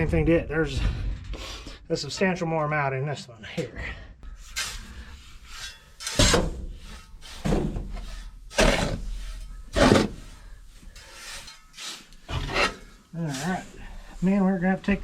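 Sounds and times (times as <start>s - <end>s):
shovel scraping grain: 4.4s - 14.8s.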